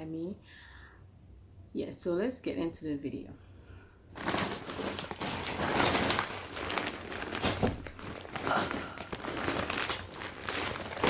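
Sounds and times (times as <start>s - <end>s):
shopping bag rustling: 4.2s - 11.0s.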